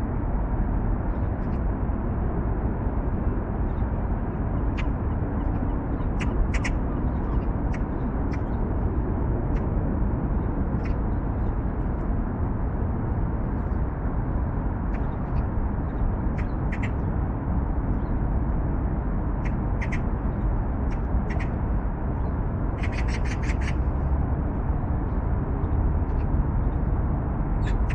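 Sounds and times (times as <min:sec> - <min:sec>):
city traffic rumble: 0:00.0 - 0:27.9
bird calls: 0:04.7 - 0:08.6, 0:16.4 - 0:17.0, 0:19.4 - 0:20.1, 0:21.3 - 0:21.6, 0:22.8 - 0:23.8.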